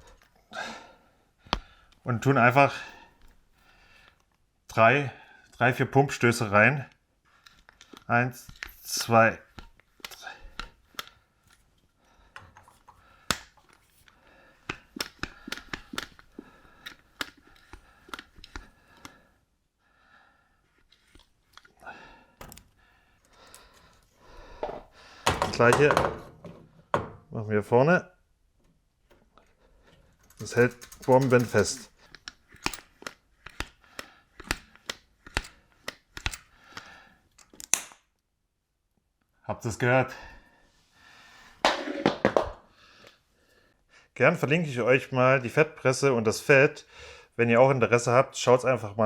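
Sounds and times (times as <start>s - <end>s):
grease gun clicking: 30.2s - 38.0s.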